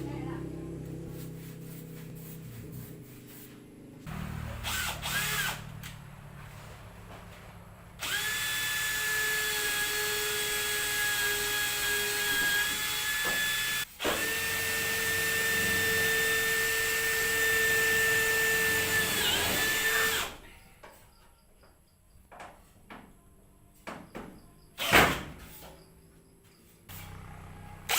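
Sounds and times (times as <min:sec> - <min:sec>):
power tool whining: 0:04.1 - 0:06.0, 0:08.0 - 0:20.4, 0:26.9 - 0:27.9.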